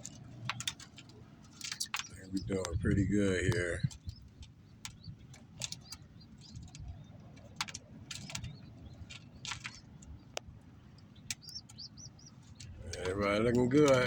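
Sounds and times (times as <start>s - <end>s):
sharp clicks and ticks: 0.0s - 14.0s
steady low rumble: 0.0s - 14.0s
faint bird chirps: 8.2s - 13.7s.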